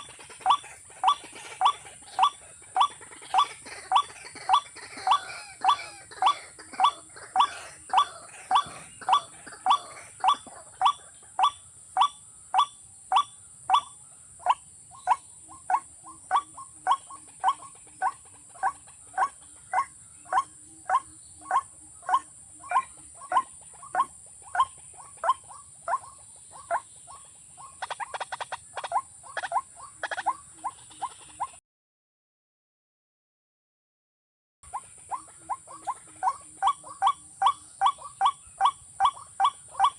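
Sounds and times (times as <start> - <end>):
rail bird calling: 0.0 - 31.6, 34.7 - 39.9.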